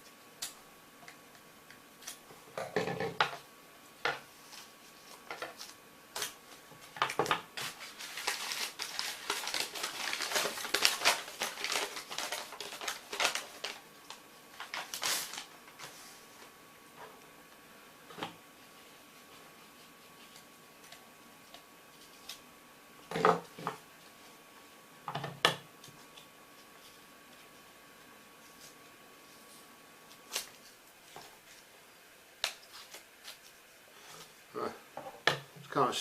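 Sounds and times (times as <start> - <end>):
knife cutting packaging: 7.6 - 13.8
tape and wrapping tearing: 7.6 - 15.5, 30.2 - 30.8.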